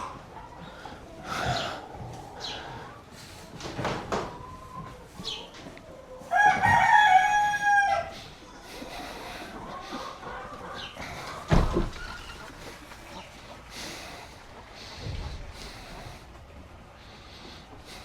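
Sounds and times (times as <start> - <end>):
rooster crowing: 6.2 - 8.3.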